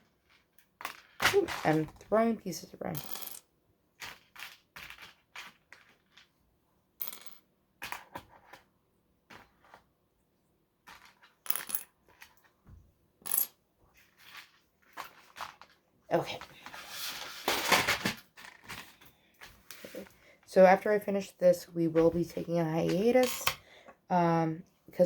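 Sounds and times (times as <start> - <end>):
plastic toy bricks clattering: 0.0 - 2.3, 4.0 - 6.3, 13.3 - 16.4, 22.8 - 23.6.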